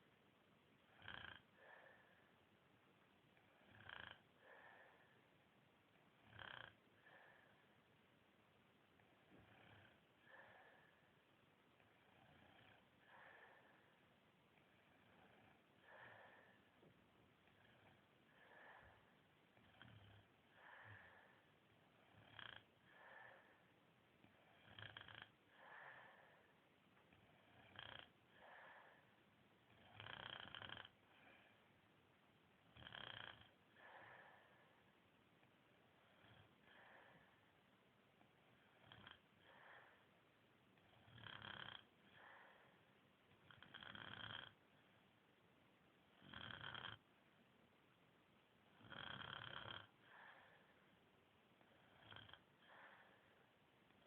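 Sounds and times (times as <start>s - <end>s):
person snoring: 0.9s - 2.1s, 3.4s - 5.1s, 6.2s - 7.6s, 17.5s - 23.6s, 24.3s - 26.4s, 27.2s - 29.1s, 29.7s - 31.4s, 32.7s - 34.7s, 38.7s - 40.0s, 40.9s - 42.8s, 43.5s - 44.6s, 46.2s - 47.0s, 48.8s - 50.7s, 51.6s - 53.3s.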